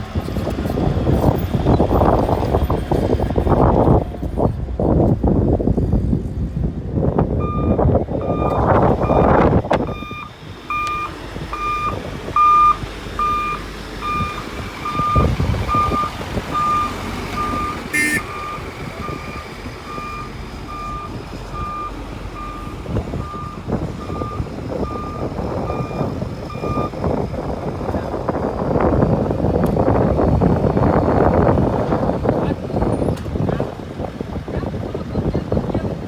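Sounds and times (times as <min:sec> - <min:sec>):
engine noise: 0:00.0 - 0:36.0
reversing alarm beeping: 0:07.4 - 0:27.0.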